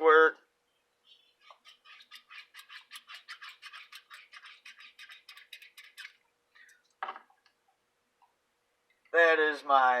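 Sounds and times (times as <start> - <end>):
brush scrubbing circuit board: 1.4 - 6.2.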